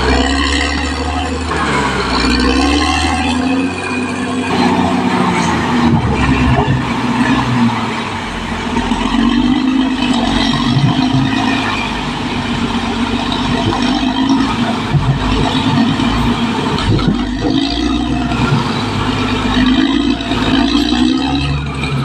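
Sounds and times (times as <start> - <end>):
bulldozer diesel engine running: 0.0 - 22.0.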